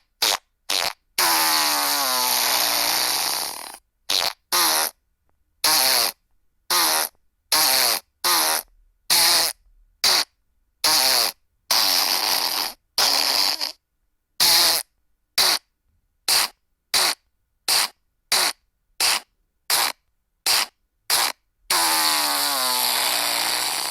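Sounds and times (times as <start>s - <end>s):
fart and burp sound effects: 0.3s - 4.9s, 16.3s - 23.9s.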